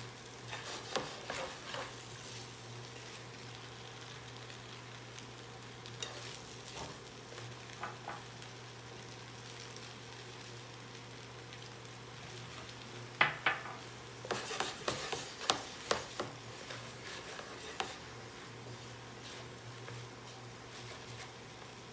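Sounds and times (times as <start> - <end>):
food sizzling in a pan: 0.0 - 21.9
utensil scraping a pan: 0.4 - 3.2, 6.0 - 7.0, 14.2 - 21.6
steady low hum: 10.4 - 21.9.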